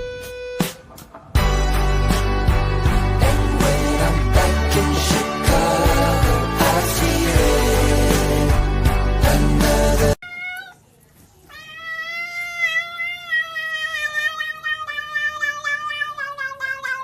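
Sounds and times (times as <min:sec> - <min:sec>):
music: 0:00.0 - 0:10.2
cat meowing: 0:10.2 - 0:10.9, 0:11.5 - 0:17.0.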